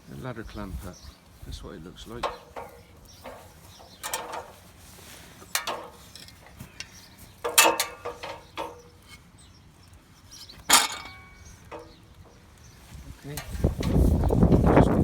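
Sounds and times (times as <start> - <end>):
metal ladder clamp clanking: 2.1 - 9.3, 10.3 - 12.0.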